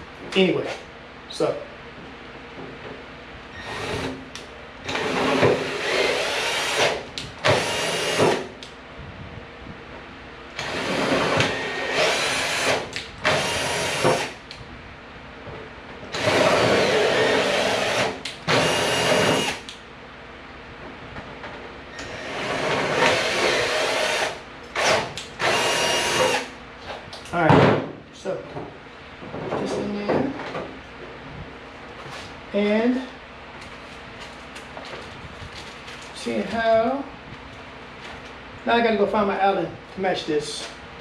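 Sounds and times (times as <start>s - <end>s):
power drill bursts: 3.6s - 4.2s, 4.8s - 8.5s, 10.6s - 14.4s, 16.1s - 19.7s, 22.0s - 26.5s.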